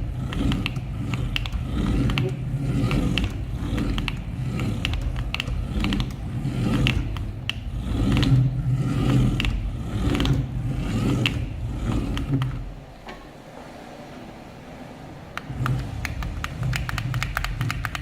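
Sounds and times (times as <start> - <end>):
toy car motor whirring: 0.0 - 12.8
clicks and knocks from chassis: 0.0 - 13.7, 15.3 - 18.0.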